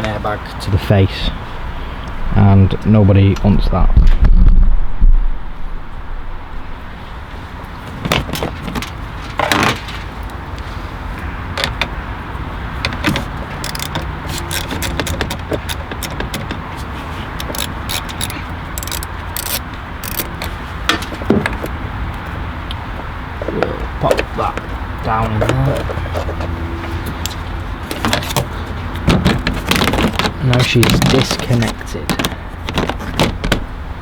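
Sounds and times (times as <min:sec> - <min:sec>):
hand tools clinking and rattling: 0:12.8 - 0:21.7.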